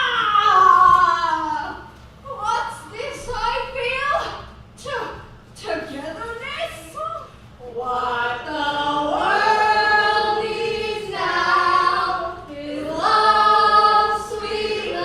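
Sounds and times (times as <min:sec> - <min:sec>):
choir singing: 0:07.6 - 0:15.0.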